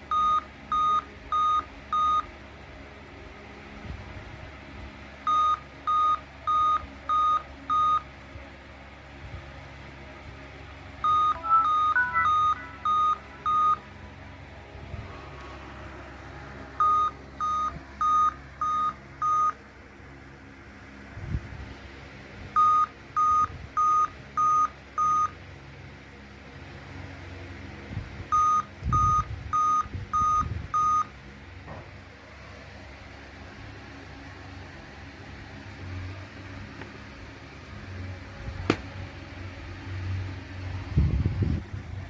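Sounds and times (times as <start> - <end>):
laptop short beeps: 11.0 - 13.8
dull thump: 38.6 - 38.9.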